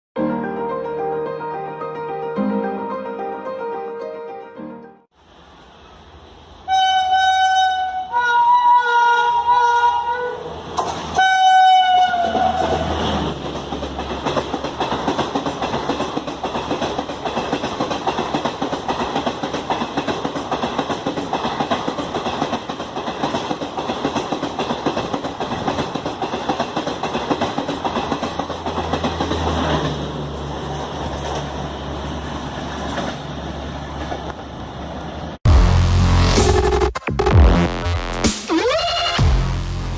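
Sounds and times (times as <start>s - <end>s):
train horn blasts: 6.7s - 10.4s, 11.2s - 13.0s
train wheels clattering over rail joints: 12.4s - 31.6s.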